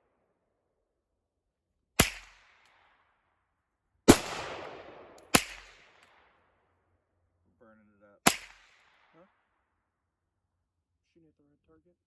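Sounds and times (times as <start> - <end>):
rifle shots: 2.0 - 2.8, 4.1 - 6.3, 8.2 - 9.1.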